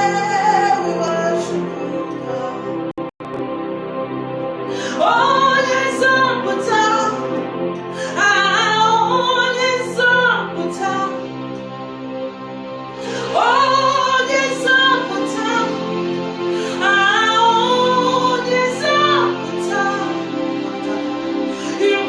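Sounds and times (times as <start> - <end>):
woman singing worship song: 0.0 - 2.7, 4.7 - 11.3, 12.9 - 22.0
sustained instrumental accompaniment: 0.0 - 22.0.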